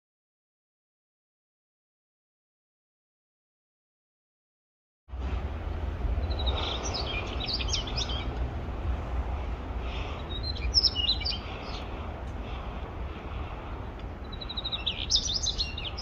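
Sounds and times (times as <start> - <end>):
steady low rumble: 5.1 - 16.0
bird twittering song: 6.1 - 8.4, 9.9 - 16.0.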